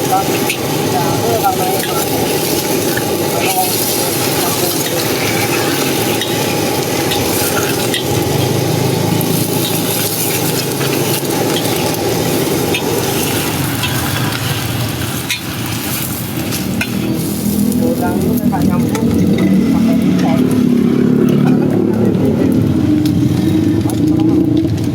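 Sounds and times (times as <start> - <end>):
food sizzling in a hot pan: 0.0 - 24.9
metal spatula scraping a pan: 0.2 - 18.0.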